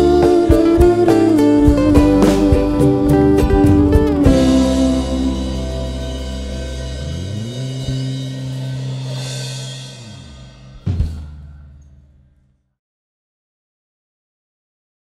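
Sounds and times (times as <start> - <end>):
drum and cymbal hit: 0.0 - 12.0
band chords ringing with cymbals: 0.0 - 12.1.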